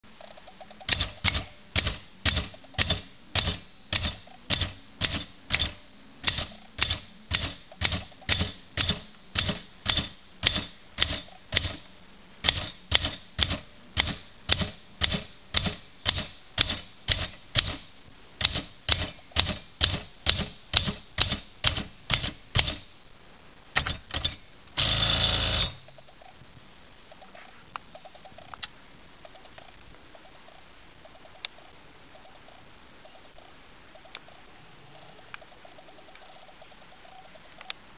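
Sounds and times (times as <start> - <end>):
typewriter carriage return sweep: 0.8 - 22.9, 23.8 - 25.9
typewriter keys striking: 0.9 - 22.9, 23.8 - 25.9.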